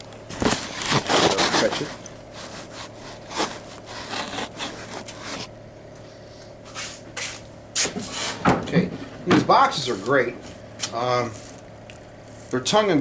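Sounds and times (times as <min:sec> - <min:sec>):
wood scraping on wood: 0:00.3 - 0:05.6.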